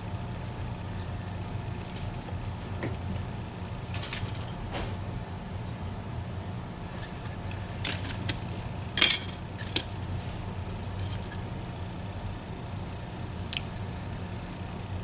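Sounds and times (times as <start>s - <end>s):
steady low hum: 0.0s - 15.0s
small metal parts clicking: 9.0s - 9.9s, 10.8s - 11.8s.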